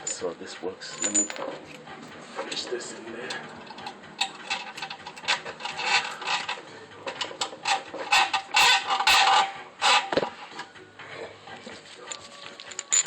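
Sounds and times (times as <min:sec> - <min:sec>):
bolt scraping and rattling on metal: 0:00.8 - 0:02.7, 0:03.3 - 0:10.7, 0:12.1 - 0:13.0.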